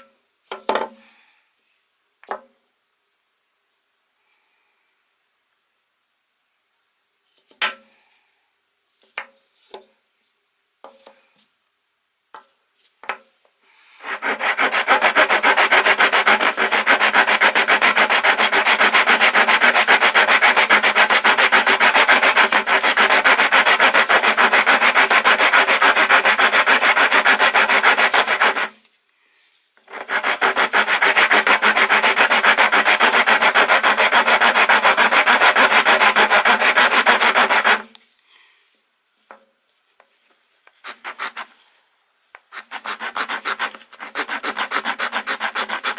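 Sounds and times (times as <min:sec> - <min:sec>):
rasp filing wood: 0:14.0 - 0:28.8, 0:29.9 - 0:37.9, 0:40.8 - 0:41.5, 0:42.4 - 0:45.9.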